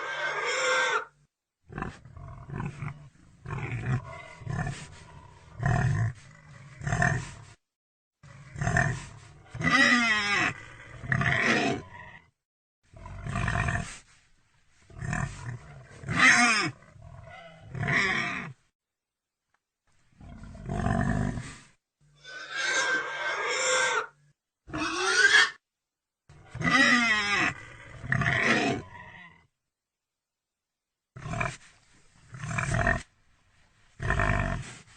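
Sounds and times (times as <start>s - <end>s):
pigs squealing: 0.0s - 1.1s, 22.2s - 24.1s, 24.7s - 25.6s, 26.5s - 28.8s.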